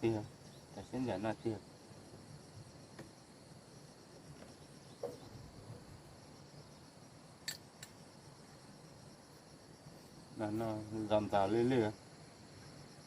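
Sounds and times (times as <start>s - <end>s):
crickets chirping: 0.0s - 13.0s.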